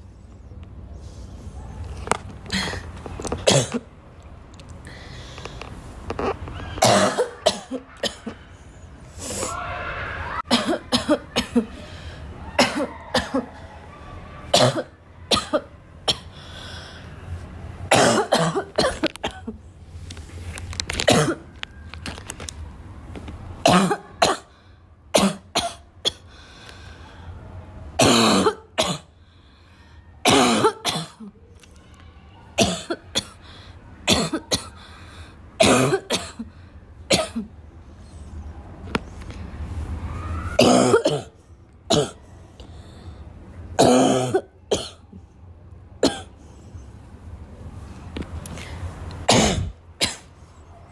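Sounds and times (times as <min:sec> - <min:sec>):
girl coughing: 0:02.5 - 0:03.9, 0:06.8 - 0:08.5, 0:10.5 - 0:12.0, 0:12.6 - 0:13.4, 0:14.5 - 0:16.4, 0:17.9 - 0:19.6, 0:21.1 - 0:21.4, 0:23.6 - 0:24.5, 0:25.2 - 0:26.2, 0:28.0 - 0:29.1, 0:30.2 - 0:31.3, 0:32.6 - 0:33.4, 0:34.1 - 0:34.8, 0:35.6 - 0:36.5, 0:37.1 - 0:37.5, 0:40.6 - 0:41.3, 0:41.9 - 0:42.2, 0:43.8 - 0:45.0, 0:46.0 - 0:46.3, 0:49.3 - 0:50.3.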